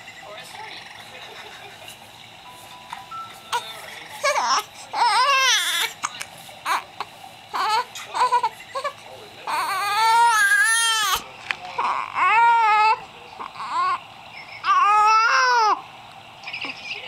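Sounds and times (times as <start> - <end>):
infant crying: 3.5 - 6.0, 6.6 - 11.2, 11.8 - 14.0, 14.6 - 15.8.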